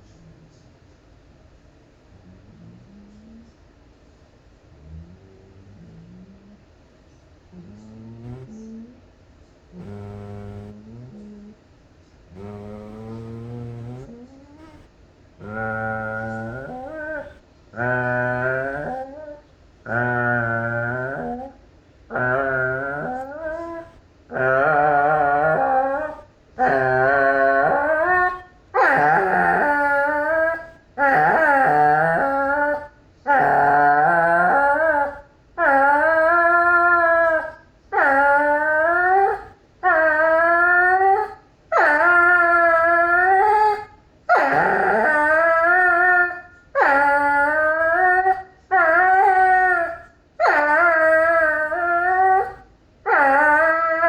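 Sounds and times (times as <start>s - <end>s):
dog howling: 12.3s - 54.0s.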